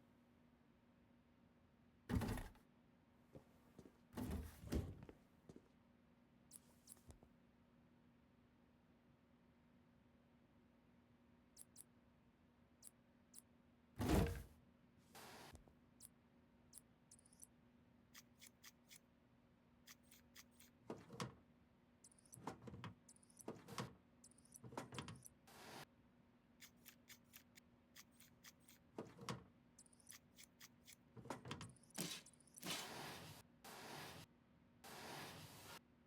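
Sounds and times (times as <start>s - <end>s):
computer parts clicking and tapping: 16.8s - 17.5s, 18.2s - 19.0s, 22.0s - 25.4s, 26.6s - 32.6s.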